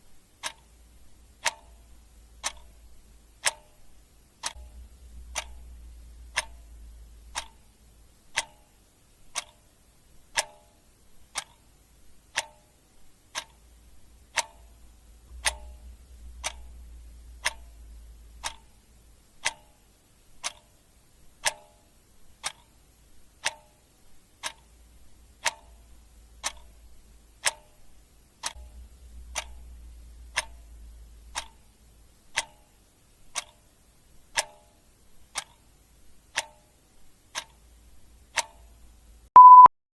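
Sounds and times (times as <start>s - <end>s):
clock ticking: 0.0s - 39.7s
low rumble: 4.6s - 7.4s, 15.0s - 19.2s, 28.6s - 31.4s.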